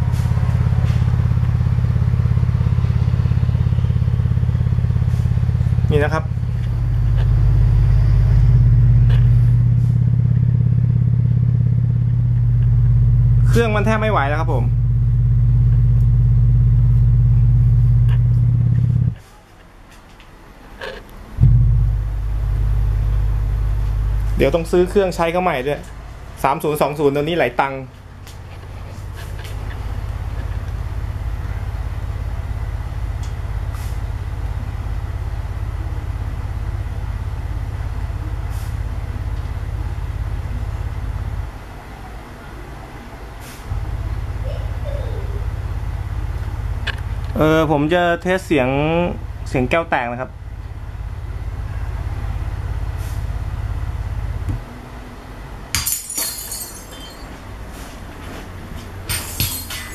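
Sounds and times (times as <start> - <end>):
deep bass rumble from loudspeaker: 0.0 - 19.2, 21.4 - 41.5, 43.7 - 54.7
loud low drone: 0.0 - 19.2, 21.4 - 41.6, 43.7 - 44.5
glass shards tinkling: 55.8 - 57.4, 59.1 - 59.9
glass shattering: 55.8 - 57.4, 59.1 - 59.9.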